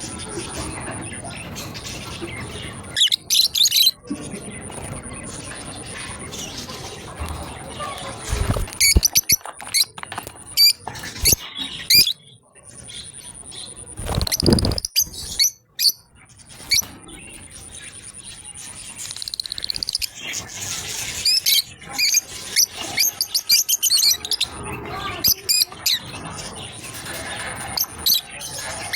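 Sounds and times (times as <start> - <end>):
birds chirping high-pitched: 0.0 - 28.9
rustling burst: 8.2 - 9.3.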